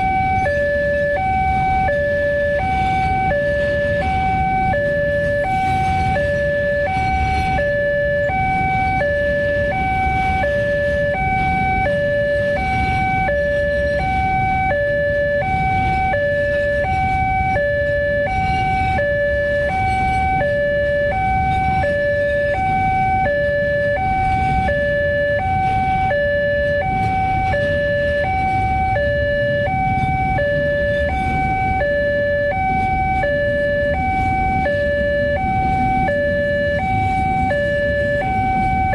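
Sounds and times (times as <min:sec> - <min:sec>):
continuous low rumble: 0:00.0 - 0:38.9
two-tone crossing alarm chime: 0:00.0 - 0:38.9.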